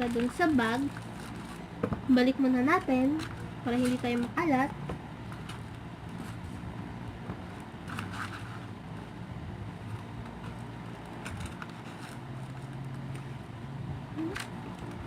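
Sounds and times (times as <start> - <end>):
low background hum: 0.0 - 15.0
paper rustling: 7.4 - 9.2, 9.8 - 13.4.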